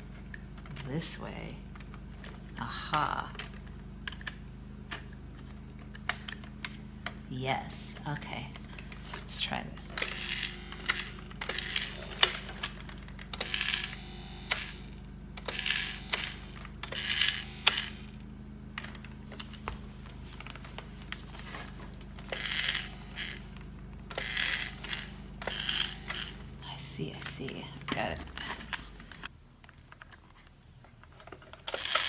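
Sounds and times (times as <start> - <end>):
steady low hum: 0.0 - 32.0
plastic clicks: 18.7 - 32.0.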